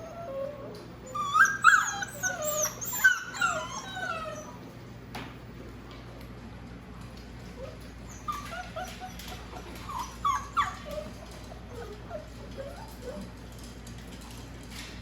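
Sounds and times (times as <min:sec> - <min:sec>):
puppies whimpering: 0:00.0 - 0:04.7, 0:07.5 - 0:13.4.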